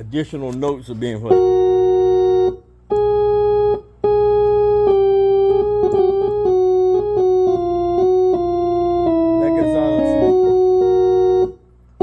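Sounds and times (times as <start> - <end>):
steady low hum: 0.0 - 12.0
organ playing: 1.0 - 12.0.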